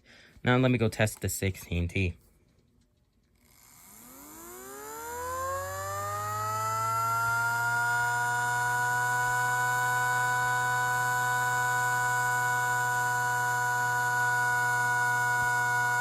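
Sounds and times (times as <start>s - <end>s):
low hum: 3.0s - 16.0s
siren winding up to a wail: 3.4s - 16.0s.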